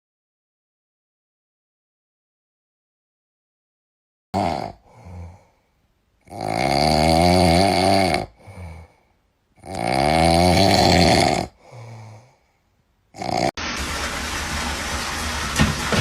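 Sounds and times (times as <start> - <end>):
loud snoring: 4.4 - 5.4, 6.2 - 8.9, 9.6 - 12.3, 13.1 - 13.6
quiet breath: 4.8 - 5.9, 8.3 - 9.4, 11.5 - 12.8.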